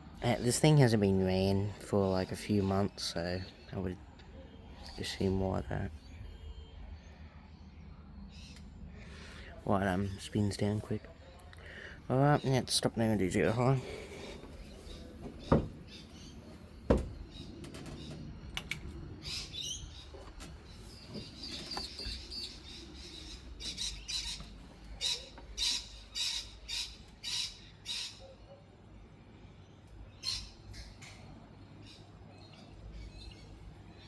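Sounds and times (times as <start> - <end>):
bird chirping: 2.0 - 28.6
sharp clicks: 18.5 - 19.0.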